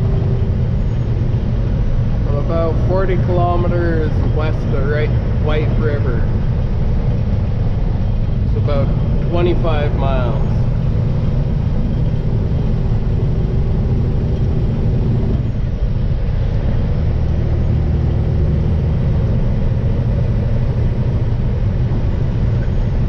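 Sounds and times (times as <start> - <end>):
road noise: 0.0 - 23.0
truck engine drone: 0.0 - 23.0.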